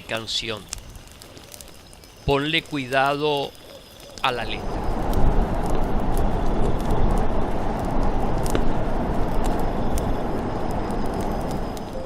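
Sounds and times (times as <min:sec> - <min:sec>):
campfire crackling and popping: 0:00.0 - 0:12.0
wind in forest: 0:00.0 - 0:12.0.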